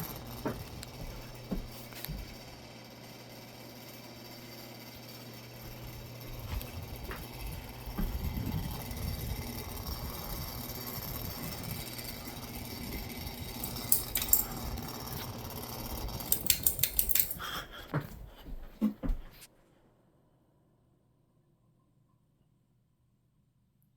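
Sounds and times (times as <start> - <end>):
ceiling fan rumbling: 0.0 - 20.1
rattling clinks: 13.4 - 14.8, 16.2 - 17.5.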